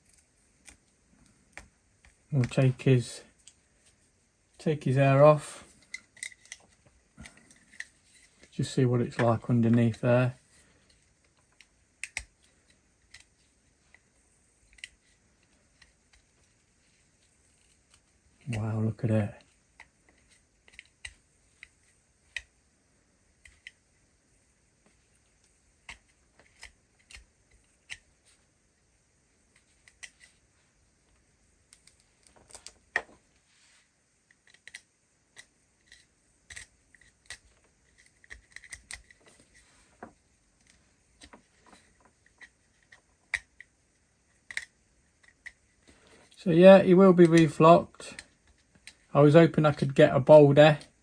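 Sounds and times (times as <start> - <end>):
plastic toy parts clicking: 5.8 - 8.5, 10.9 - 13.3, 19.8 - 22.5, 34.3 - 39.4, 40.6 - 45.6.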